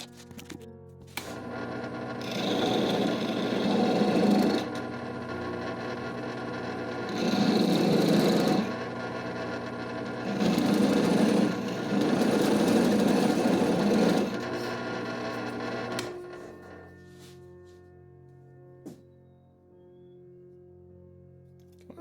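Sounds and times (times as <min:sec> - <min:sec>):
drill boring into steel: 0:01.2 - 0:16.8.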